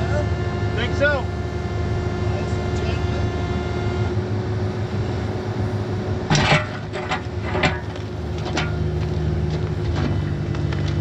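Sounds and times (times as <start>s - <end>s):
heavy equipment engine running: 0.0s - 11.0s.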